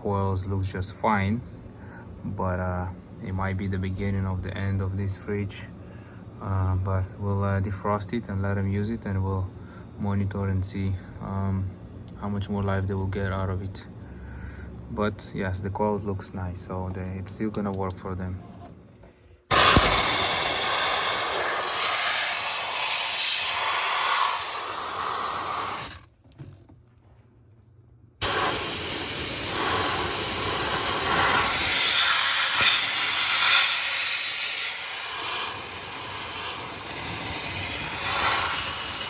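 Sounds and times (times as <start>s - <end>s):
loud hiss from de-icing tool: 19.5s - 26.0s, 28.2s - 39.0s.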